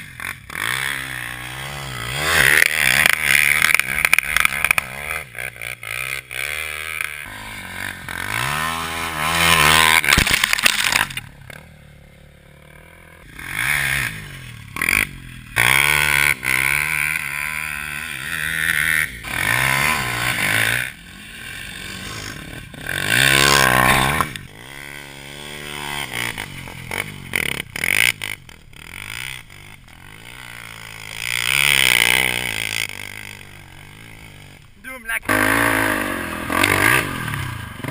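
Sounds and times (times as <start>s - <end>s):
quad engine revving: 0.0s - 37.9s.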